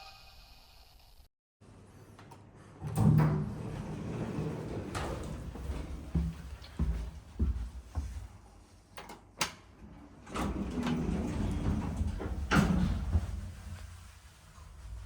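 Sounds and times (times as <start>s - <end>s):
elevator doors sliding and clunking: 2.8s - 7.3s, 9.6s - 15.0s
elevator low rumbling: 2.8s - 7.5s, 9.8s - 15.0s.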